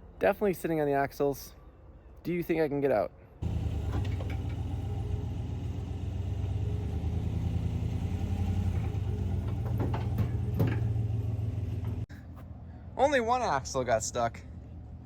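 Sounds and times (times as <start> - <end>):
engine running under load: 3.4 - 12.1.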